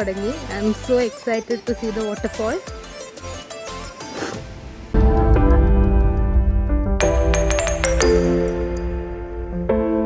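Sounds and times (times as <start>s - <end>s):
bright bell-like notes: 7.0s - 9.2s.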